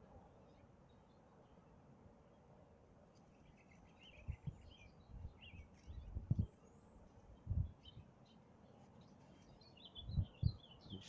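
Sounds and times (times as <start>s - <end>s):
small birds chirping: 3.1s - 11.0s.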